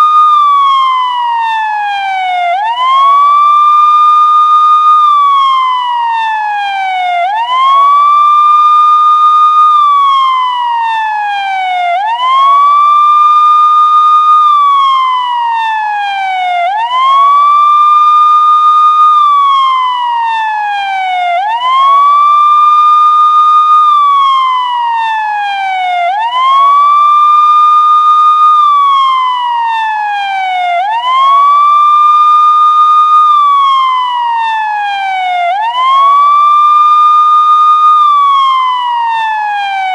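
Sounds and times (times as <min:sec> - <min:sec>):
police siren wailing: 0:00.0 - 0:39.9.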